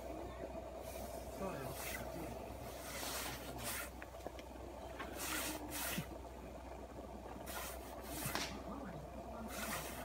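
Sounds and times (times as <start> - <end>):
steady low hum: 0.0 - 10.0
short scraping strokes: 0.8 - 4.0, 5.1 - 6.1, 7.4 - 8.6, 9.5 - 10.0.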